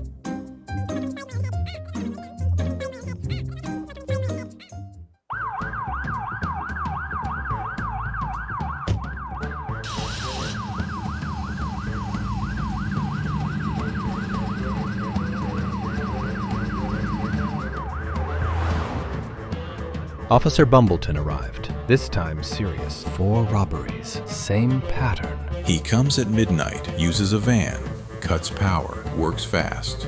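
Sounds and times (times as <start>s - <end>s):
music: 0.0s - 30.0s
police siren: 5.3s - 19.1s
low vehicle hum: 9.8s - 17.8s.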